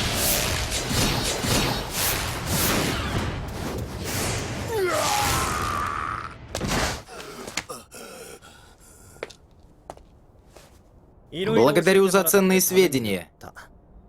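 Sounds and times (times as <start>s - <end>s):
cry falling in pitch: 4.7s - 6.4s.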